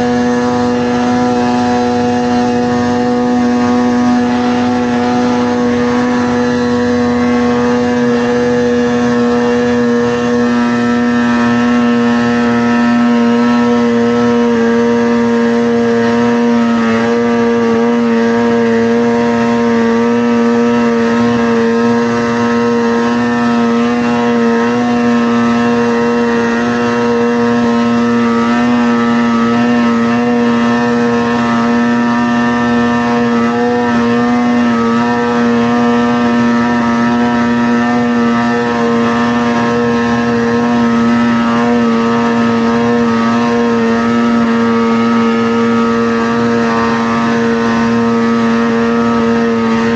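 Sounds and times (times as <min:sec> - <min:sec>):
snowmobile engine running: 0:00.0 - 0:49.9.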